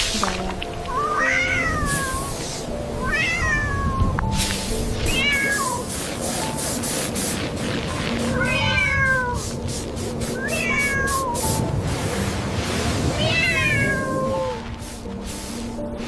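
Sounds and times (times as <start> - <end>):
cat meowing: 0.9 - 2.4, 3.0 - 4.4, 5.0 - 5.9, 8.4 - 9.5, 10.4 - 11.6, 13.2 - 14.7.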